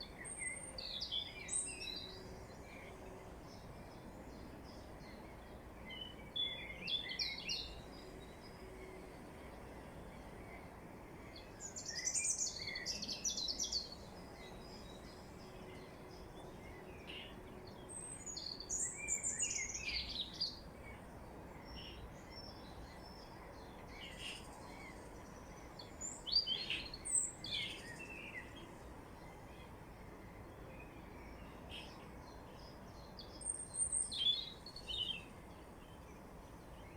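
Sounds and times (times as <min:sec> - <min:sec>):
low background hiss: 0:00.0 - 0:36.9
songbirds twittering: 0:00.0 - 0:36.9.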